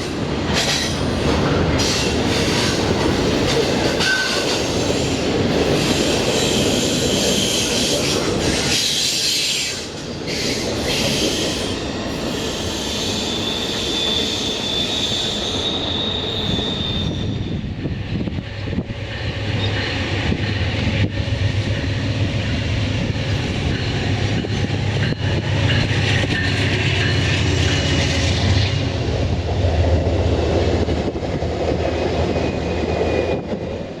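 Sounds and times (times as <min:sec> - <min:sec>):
freight train rolling past: 0:00.0 - 0:34.0
high wheel squeal: 0:04.0 - 0:17.8.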